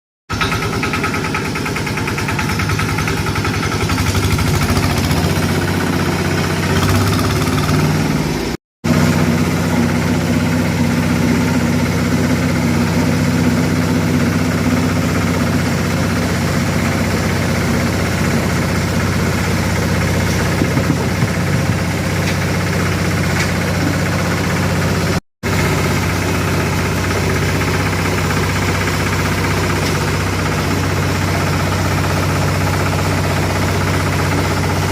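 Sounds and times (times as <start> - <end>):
machine motor humming and rattling: 0.3 - 34.9.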